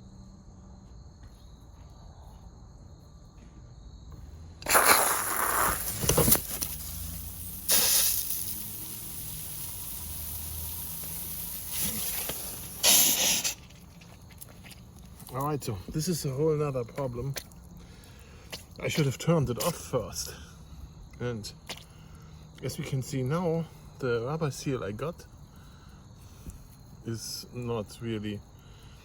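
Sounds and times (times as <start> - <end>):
insects chirping: 0.0 - 29.0
water hissing from leaking hose: 4.6 - 20.5.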